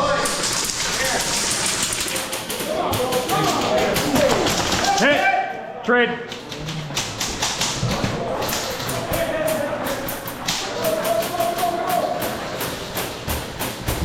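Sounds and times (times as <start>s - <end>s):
airsoft guns firing: 0.2s - 5.2s.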